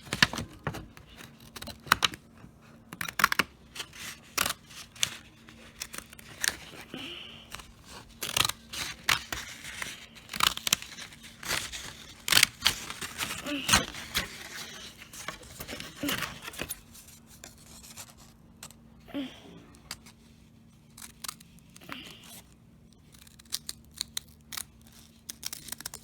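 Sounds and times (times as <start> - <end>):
paper rustling: 0.0 - 18.8
scissors cutting paper: 0.0 - 18.8, 20.8 - 22.4, 23.0 - 26.0.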